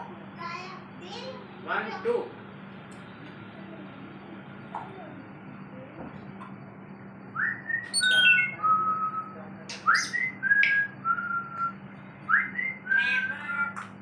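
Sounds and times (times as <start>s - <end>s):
parrot whistling: 7.4s - 13.7s.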